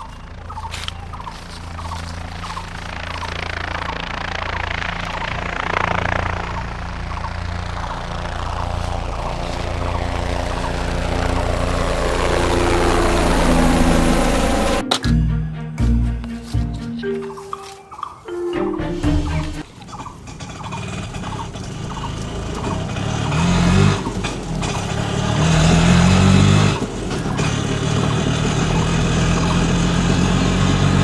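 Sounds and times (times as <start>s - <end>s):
mechanical drone with low hum: 0.0s - 16.8s.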